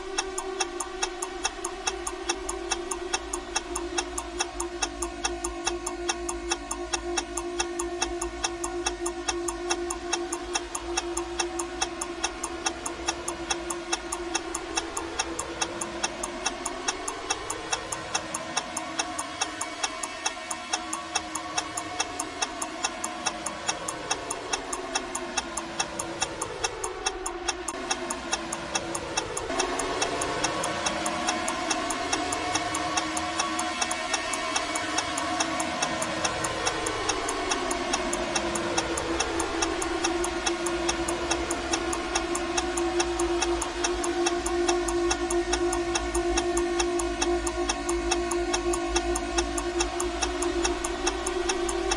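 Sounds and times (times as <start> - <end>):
clock-like ticks: 0.0 - 51.9.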